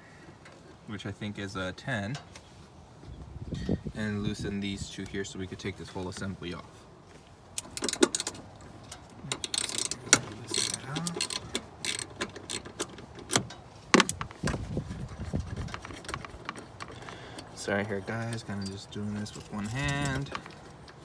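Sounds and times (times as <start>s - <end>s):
ratchet clicking: 7.6s - 8.4s, 9.3s - 14.2s.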